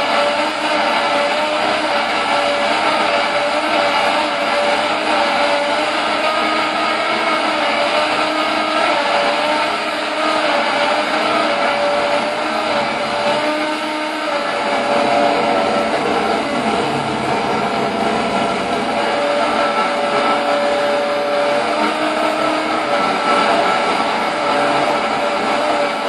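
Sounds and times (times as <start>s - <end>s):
electric razor buzz drone: 0.0s - 16.9s, 18.8s - 26.0s.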